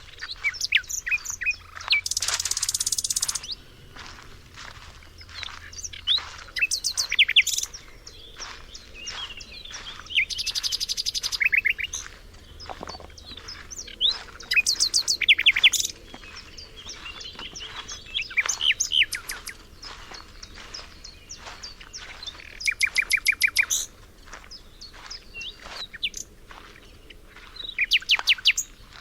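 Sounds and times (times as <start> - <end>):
songbirds singing and chirping: 0.0 - 29.0.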